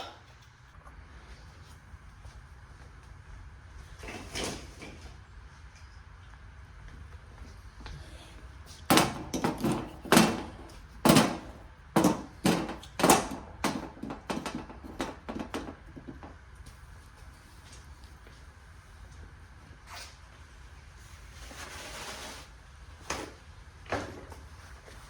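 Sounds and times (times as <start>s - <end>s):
tools clicking and knocking: 8.9s - 16.3s.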